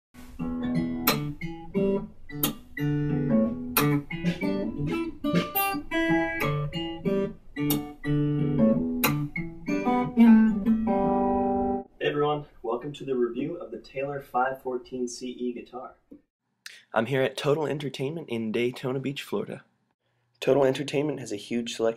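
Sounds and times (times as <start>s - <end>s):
fingerstyle acoustic guitar: 0.2s - 11.8s
strummed guitar accents: 0.2s - 11.8s.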